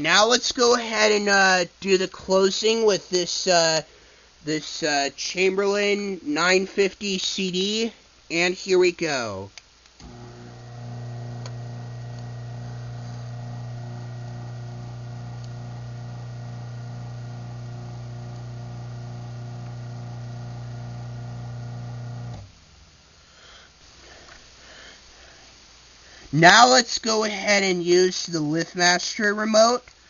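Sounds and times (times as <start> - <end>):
garage door opener motor humming: 10.0 - 22.6.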